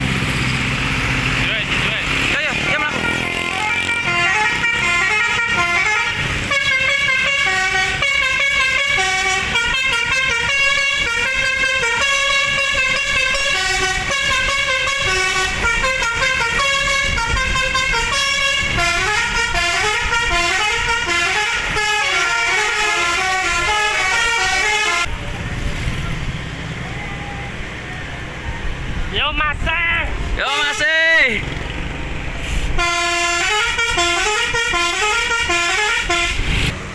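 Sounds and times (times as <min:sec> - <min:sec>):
bus engine running: 0:00.0 - 0:36.9
multi-tone bus horn tune: 0:02.8 - 0:25.1, 0:30.4 - 0:30.9, 0:32.7 - 0:36.8.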